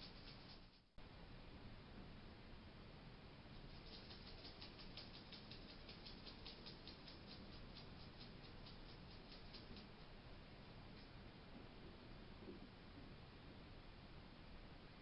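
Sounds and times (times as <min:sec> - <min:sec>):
hedgehog making rapid clicks: 0:00.0 - 0:00.9, 0:03.6 - 0:10.2.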